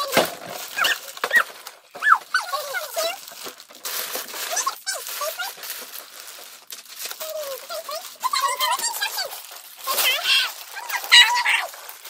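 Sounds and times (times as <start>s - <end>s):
plastic bags rustling: 0.0s - 12.0s
sped-up squeaky voices chattering: 7.3s - 11.8s.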